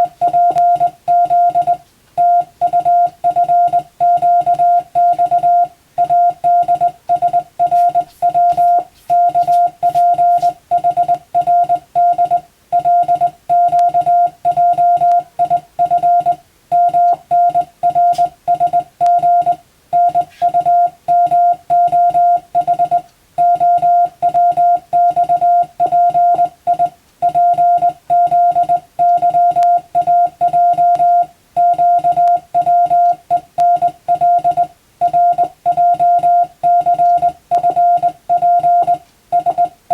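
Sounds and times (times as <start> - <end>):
morse code tone: 0.0 - 39.9.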